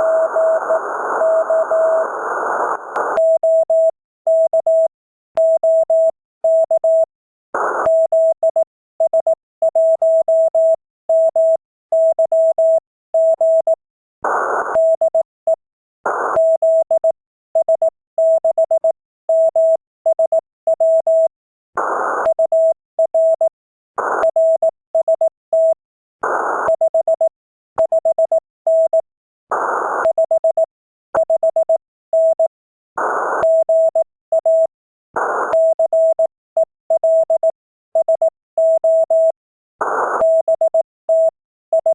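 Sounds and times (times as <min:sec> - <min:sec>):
morse code tone: 0:00.0 - 0:02.0, 0:37.0 - 0:39.4.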